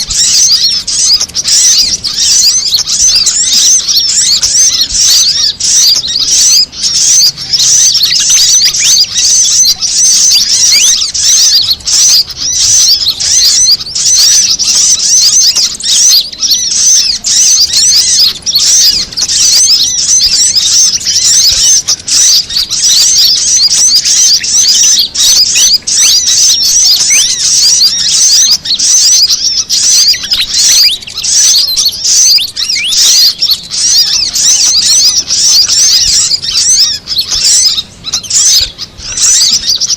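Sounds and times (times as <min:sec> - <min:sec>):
small songbirds chirping: 0:00.0 - 0:39.9.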